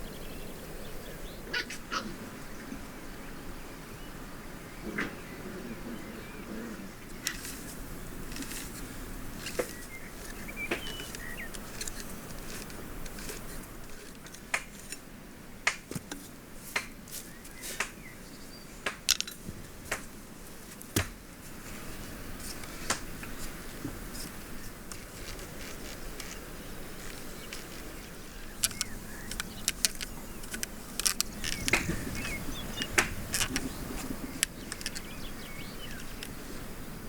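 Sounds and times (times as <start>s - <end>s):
sharp taps and clicks: 28.6s - 32.0s.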